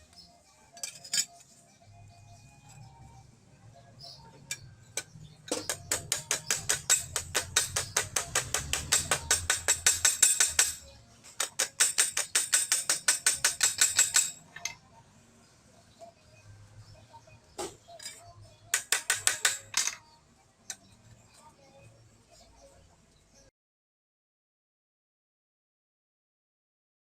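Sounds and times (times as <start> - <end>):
hammer blows on sheet steel: 5.0 - 14.4.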